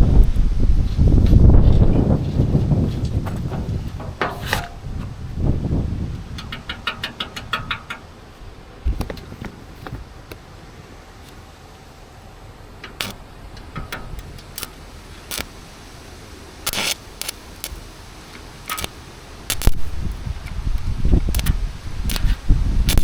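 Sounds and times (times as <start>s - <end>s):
low steady background noise: 0.0s - 23.0s
sharp clicks and knocks: 3.0s - 5.1s, 6.3s - 8.1s, 18.7s - 18.9s.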